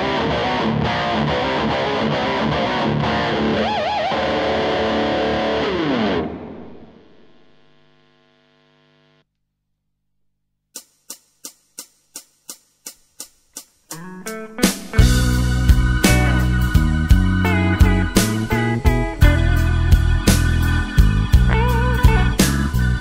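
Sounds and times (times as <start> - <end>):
distorted electric guitar: 0.0 - 9.2, 13.9 - 23.0
evenly spaced clicks: 10.8 - 15.0.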